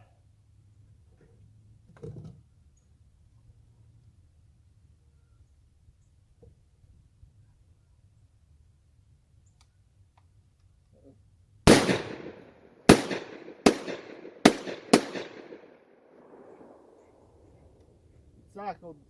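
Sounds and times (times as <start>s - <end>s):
shotgun shots with echo: 11.7s - 16.5s.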